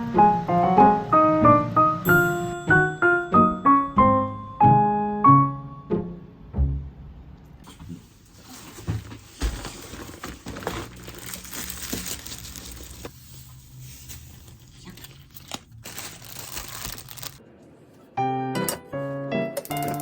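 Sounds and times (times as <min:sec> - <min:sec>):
crinkling and rustling by hand: 0:07.6 - 0:17.4.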